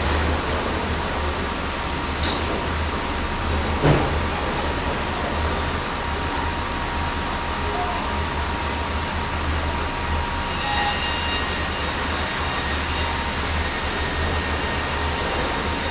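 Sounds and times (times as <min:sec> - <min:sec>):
sawmill humming: 0:08.3 - 0:15.9
high metallic saw whine: 0:10.4 - 0:15.9.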